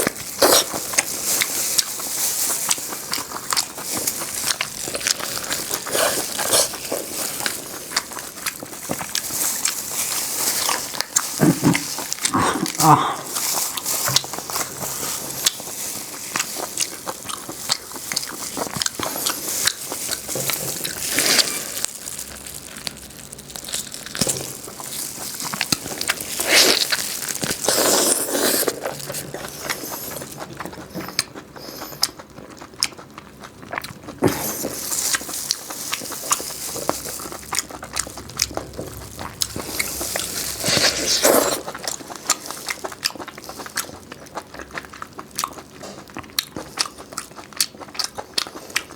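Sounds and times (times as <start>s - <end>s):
chewing and crunching: 0.0s - 48.9s
loud bite: 36.2s - 42.1s.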